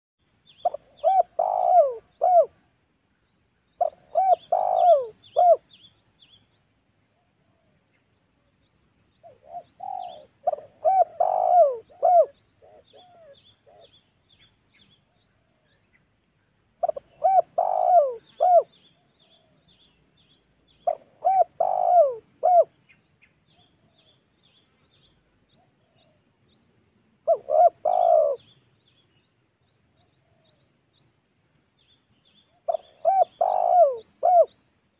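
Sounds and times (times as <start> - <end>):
small birds chirping: 0.2 - 34.9
dove cooing: 0.6 - 2.7, 3.8 - 5.8, 9.2 - 14.0, 16.8 - 19.5, 20.8 - 22.8, 27.2 - 28.5, 32.7 - 34.6.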